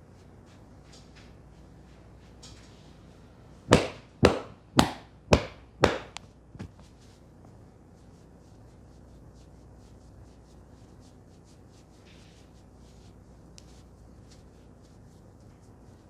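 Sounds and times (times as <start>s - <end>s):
hand slaps on head: 3.7s - 6.8s.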